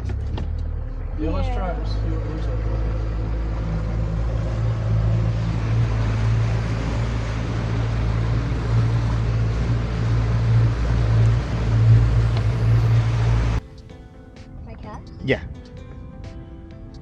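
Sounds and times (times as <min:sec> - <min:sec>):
outboard motor running: 0:00.0 - 0:13.6
water rushing: 0:01.7 - 0:13.7
rushing wind: 0:04.7 - 0:14.3.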